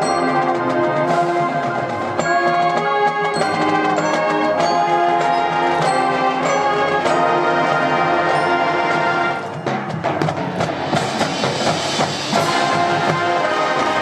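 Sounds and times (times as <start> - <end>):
marching band playing: 0.0 - 14.0.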